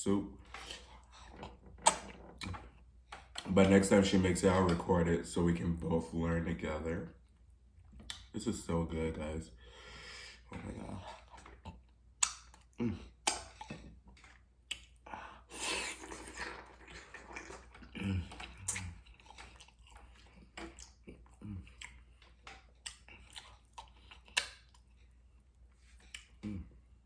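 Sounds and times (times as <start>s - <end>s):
wet chewing and smacking: 0.4s - 4.0s, 7.2s - 8.4s, 10.4s - 26.8s.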